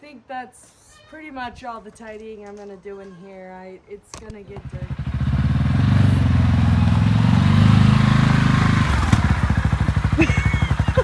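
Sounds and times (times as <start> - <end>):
vehicle engine running: 4.5 - 11.0.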